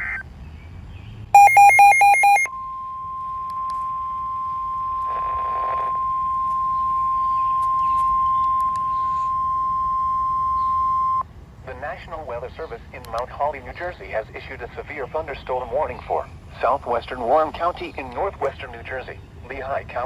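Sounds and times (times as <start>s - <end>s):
steady warning alarm tone: 1.4s - 11.2s
warbling data tone: 1.4s - 11.2s.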